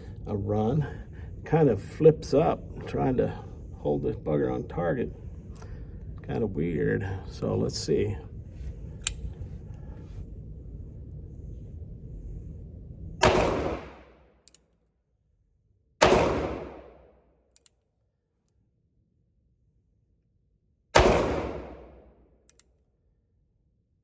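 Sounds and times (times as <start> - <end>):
faint click: 9.0 - 9.4, 22.4 - 22.7
revolver shots: 13.2 - 14.0, 16.0 - 17.0, 21.0 - 22.0.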